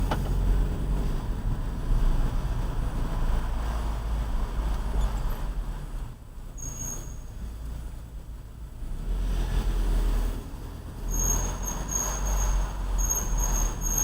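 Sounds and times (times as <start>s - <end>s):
car rolling road rumble: 0.0s - 14.0s
brake squeal: 4.9s - 5.5s, 6.4s - 7.9s, 11.0s - 14.0s.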